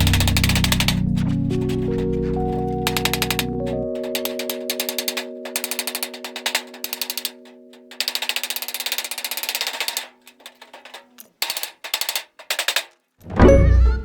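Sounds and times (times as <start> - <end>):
held musical chord: 0.0 - 8.0, 13.3 - 14.0
rapid mechanical clicking: 0.0 - 13.1.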